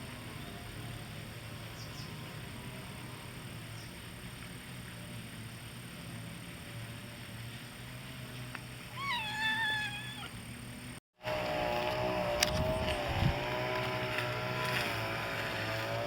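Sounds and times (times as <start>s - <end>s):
kitten mewing: 9.0s - 10.4s.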